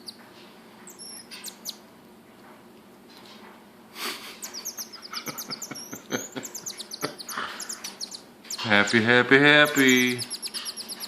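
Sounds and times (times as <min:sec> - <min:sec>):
marmoset chirping: 0:00.0 - 0:00.2, 0:00.9 - 0:01.9, 0:04.3 - 0:11.0
breathy puff: 0:04.0 - 0:04.4.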